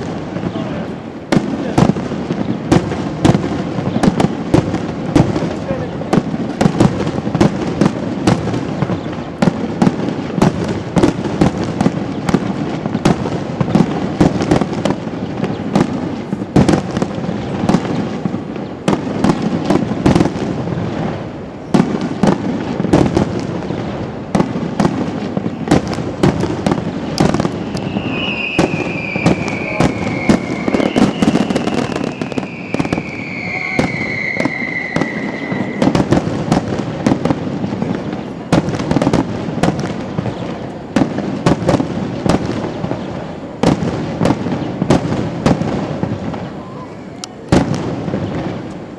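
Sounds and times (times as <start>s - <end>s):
fireworks bangs and crackling: 0.0s - 48.9s
falling firework whistles: 26.6s - 37.4s.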